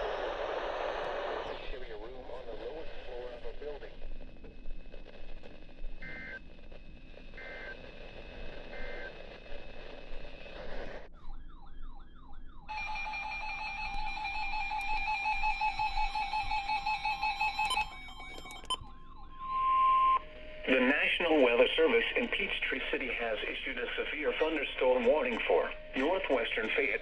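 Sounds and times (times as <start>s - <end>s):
radio static: 0.0s - 11.1s, 12.8s - 27.0s.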